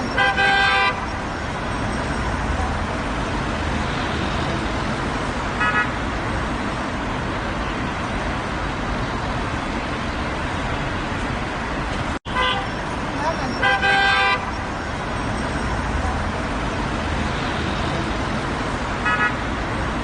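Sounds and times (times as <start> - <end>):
car horn toots: 0.0 - 1.1, 12.3 - 12.8, 13.6 - 14.5
heavy road traffic: 0.0 - 20.0.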